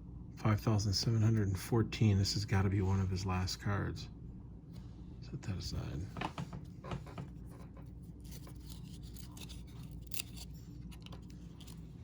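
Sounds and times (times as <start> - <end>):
low steady hum: 0.0 - 12.0
cards scraping and rustling: 6.2 - 12.0.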